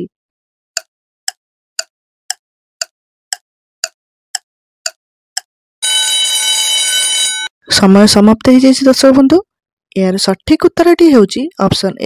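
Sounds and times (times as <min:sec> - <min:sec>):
clock-like ticking: 0:00.8 - 0:05.5
ringing alarm: 0:05.8 - 0:07.6.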